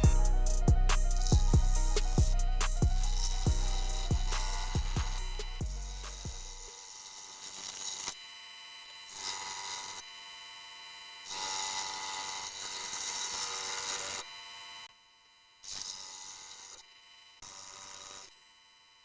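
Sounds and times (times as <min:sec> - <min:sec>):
scroll saw cutting wood: 0:00.0 - 0:08.2.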